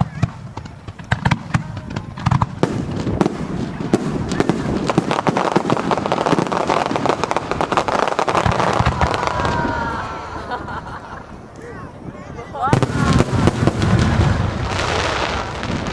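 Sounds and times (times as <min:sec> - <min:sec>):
fireworks bursting and crackling: 0:00.0 - 0:15.9.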